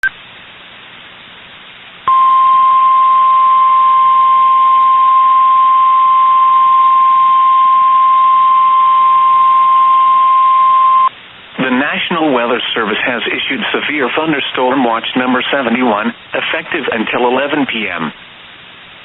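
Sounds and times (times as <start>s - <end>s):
faint radio hiss: 0.0s - 19.0s
alert tone: 2.1s - 11.1s.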